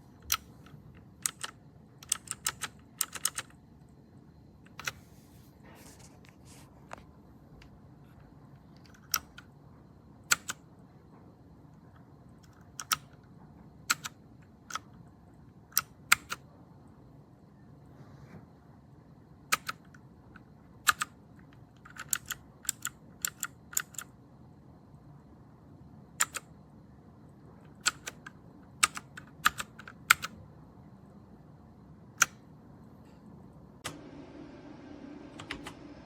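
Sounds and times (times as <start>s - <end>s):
mechanical keyboard key clacks: 0.2s - 3.6s, 10.3s - 10.6s, 12.4s - 13.2s, 15.8s - 16.4s, 19.5s - 19.9s, 20.8s - 21.1s, 21.8s - 24.1s, 26.2s - 26.5s, 27.7s - 30.4s.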